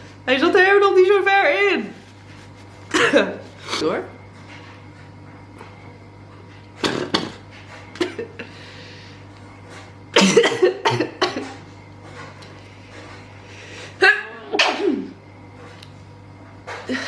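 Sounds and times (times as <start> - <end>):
person coughing: 2.9 - 3.4, 6.8 - 7.4, 10.2 - 11.6, 14.0 - 15.1
person sneezing: 14.0 - 15.1.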